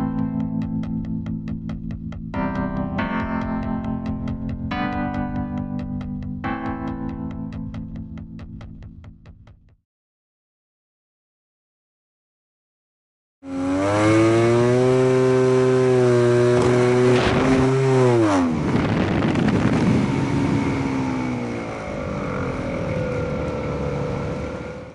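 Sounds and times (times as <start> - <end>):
model aircraft motor and propeller: 21.5 - 24.9.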